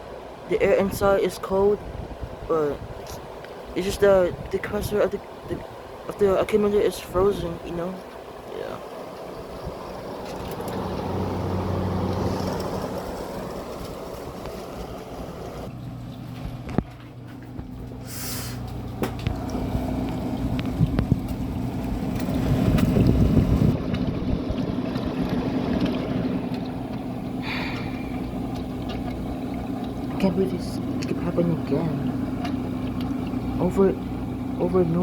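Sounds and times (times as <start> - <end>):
air conditioner humming: 0.0 - 35.0.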